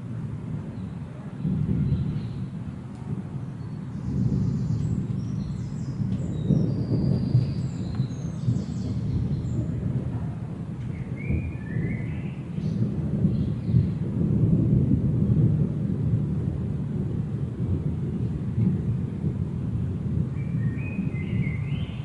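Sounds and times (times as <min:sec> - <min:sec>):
low thunder-like rumble: 0:00.0 - 0:22.0
birds chirping: 0:03.4 - 0:09.8, 0:20.4 - 0:22.0.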